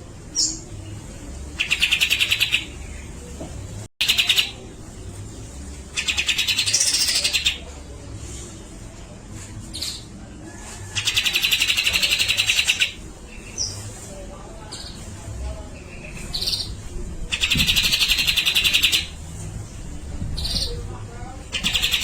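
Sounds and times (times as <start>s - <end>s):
bird singing fast rattling notes: 21.5s - 22.0s.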